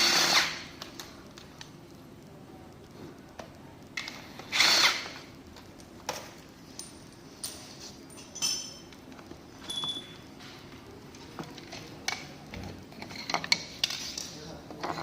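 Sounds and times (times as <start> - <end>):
metallic clinks of screws and tool: 6.7 - 9.0, 9.6 - 10.2.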